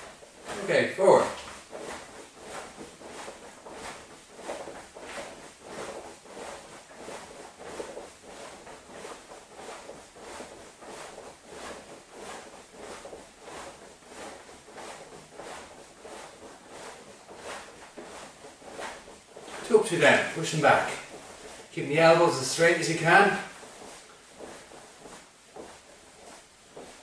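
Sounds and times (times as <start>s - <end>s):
clothing swishing: 0.0s - 27.0s.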